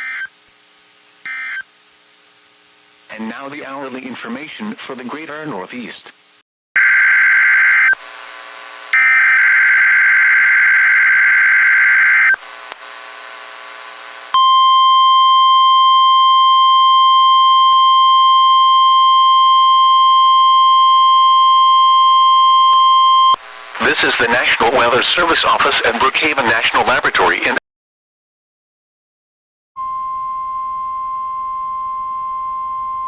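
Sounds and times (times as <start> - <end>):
piercing alarm tone: 6.8 - 8.0, 9.0 - 12.4, 14.4 - 23.4
screeching digital data bursts: 6.8 - 8.0, 9.0 - 12.4.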